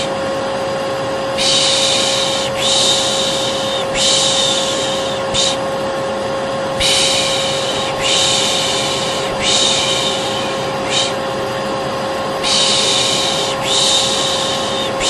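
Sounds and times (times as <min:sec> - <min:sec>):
vacuum cleaner running: 0:00.0 - 0:15.0
person shushing: 0:01.4 - 0:05.7, 0:06.8 - 0:11.3, 0:12.4 - 0:15.0.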